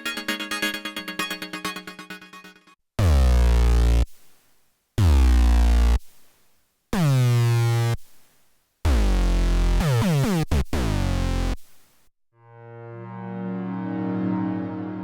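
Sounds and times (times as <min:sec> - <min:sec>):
synthesizer bass notes: 0:03.0 - 0:04.0, 0:05.0 - 0:06.0, 0:07.0 - 0:08.0, 0:08.9 - 0:11.6.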